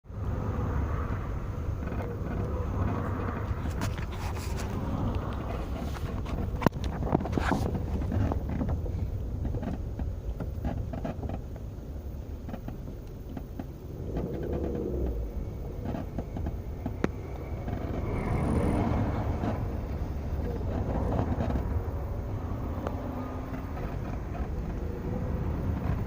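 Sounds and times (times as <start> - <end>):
steady low rumble: 0.0 - 26.0
creaking and squeaking: 12.4 - 26.0.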